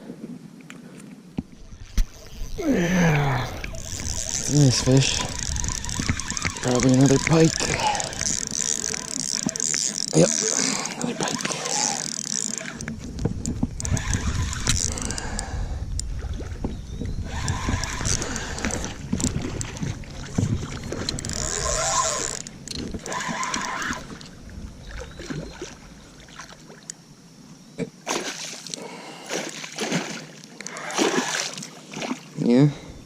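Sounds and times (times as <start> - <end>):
water splashing and sloshing: 1.0 - 27.0, 28.0 - 32.6
wind rumble on microphone: 1.4 - 8.6, 12.8 - 26.1.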